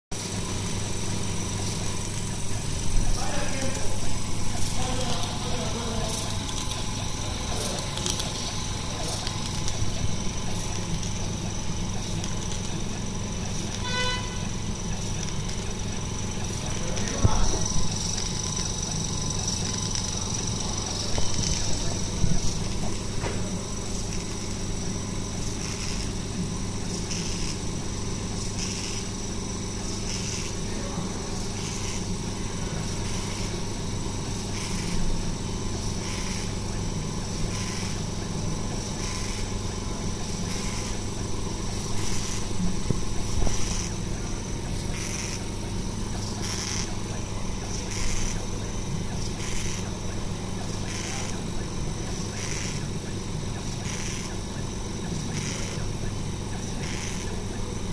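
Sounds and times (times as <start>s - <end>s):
laser engraver machine hum: 0.2s - 57.9s
high-pitched pulsing sound: 36.0s - 57.9s.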